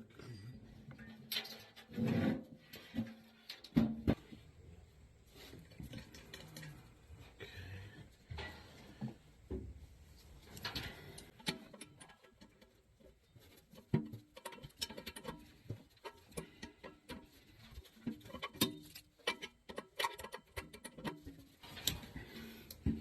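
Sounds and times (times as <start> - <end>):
hands handling tools and parts: 8.3 - 23.0.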